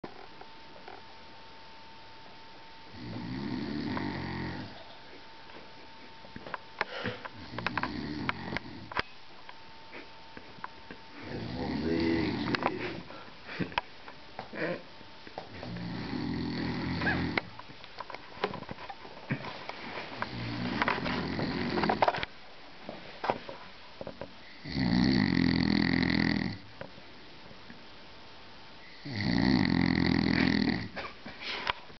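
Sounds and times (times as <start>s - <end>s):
person snoring: 2.9s - 4.8s, 6.9s - 9.0s, 11.2s - 13.2s, 15.6s - 17.4s, 20.3s - 22.0s, 24.4s - 26.7s, 28.9s - 31.0s.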